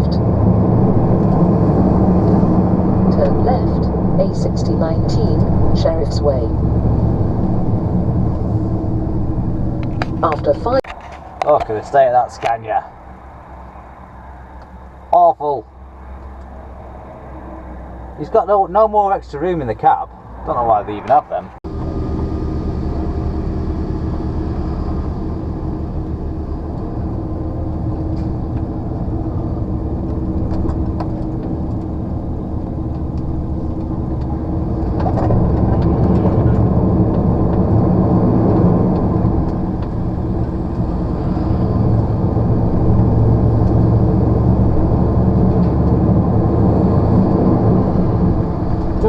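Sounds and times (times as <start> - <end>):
lorry diesel engine running: 0.0 - 49.0
road noise: 0.0 - 49.0.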